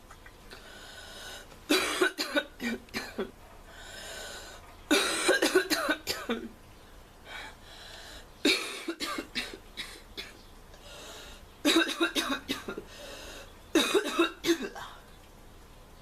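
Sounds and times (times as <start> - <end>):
quiet breathing: 0.5 - 1.6, 3.6 - 4.8, 6.8 - 8.4, 10.7 - 11.6, 12.8 - 13.6
girl coughing hoarsely: 1.7 - 3.3, 4.9 - 6.5, 8.5 - 10.4, 11.7 - 12.8, 13.8 - 14.8.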